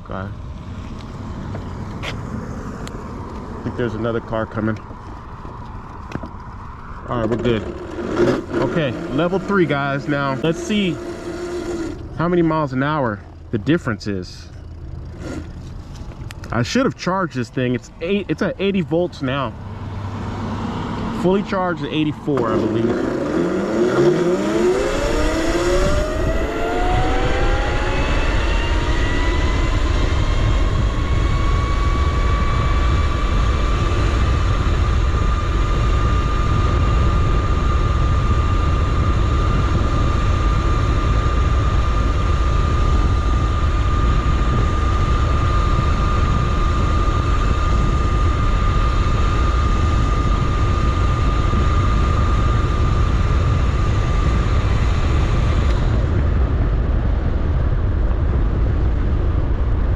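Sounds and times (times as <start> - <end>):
electric motor whine: 0.5 - 12.4, 14.5 - 16.5, 19.6 - 56.5
wind rush on microphone: 17.6 - 59.9.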